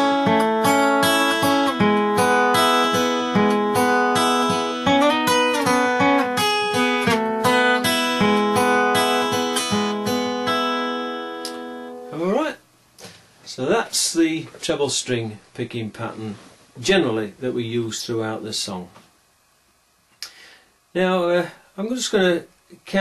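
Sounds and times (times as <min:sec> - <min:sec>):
fingerpicked acoustic guitar: 0:00.0 - 0:12.2.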